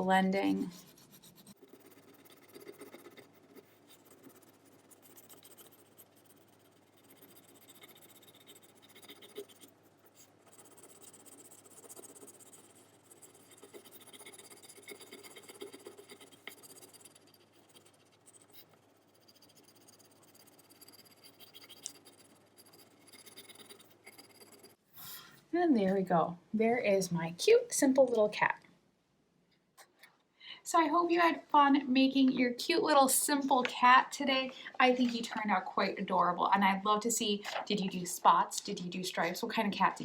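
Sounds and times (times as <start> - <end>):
crayon scratching on paper: 0.0 - 24.8.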